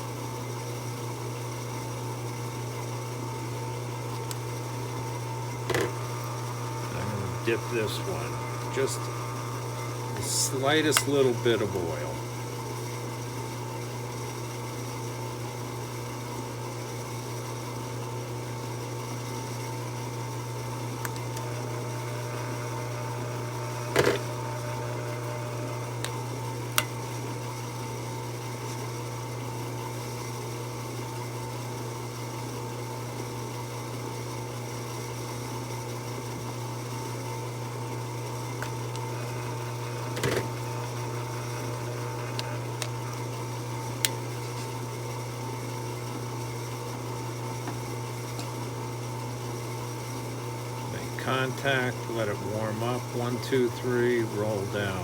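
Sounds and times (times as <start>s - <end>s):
drill press motor running: 3.2s - 13.8s, 19.1s - 28.0s, 37.5s - 55.0s.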